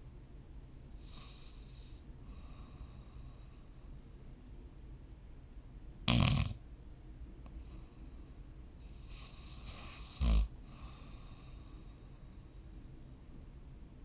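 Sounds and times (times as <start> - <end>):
person snoring: 6.1 - 6.6, 9.0 - 12.0.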